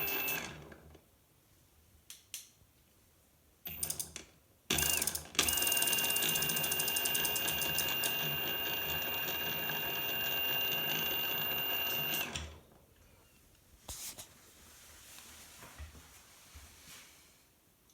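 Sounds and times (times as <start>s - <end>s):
e-bike motor whining and ratcheting: 4.8s - 12.3s.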